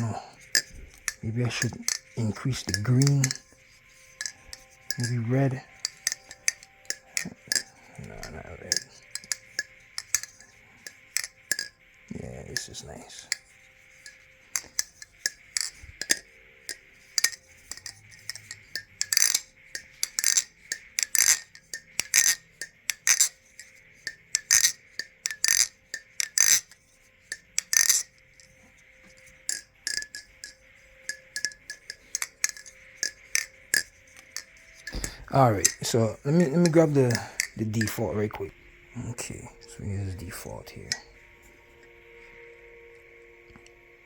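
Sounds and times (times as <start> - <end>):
butterfly knife clacking: 0.0 - 43.8.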